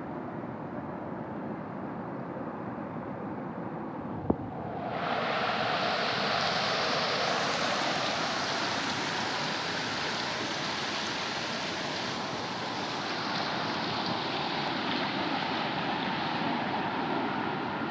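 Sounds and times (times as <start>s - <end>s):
river rushing over rapids: 4.2s - 17.9s.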